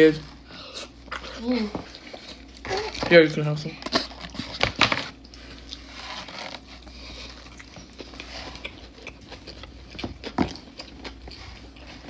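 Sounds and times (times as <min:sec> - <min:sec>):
chewing and lip smacking: 0:06.6 - 0:12.0.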